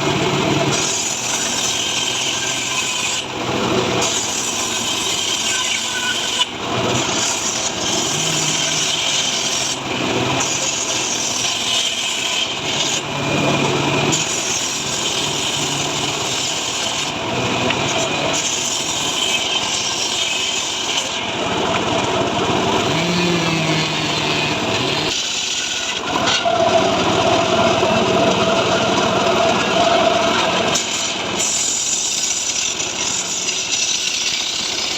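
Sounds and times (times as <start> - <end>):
chainsaw cutting wood: 0.0 - 21.1, 22.0 - 25.6.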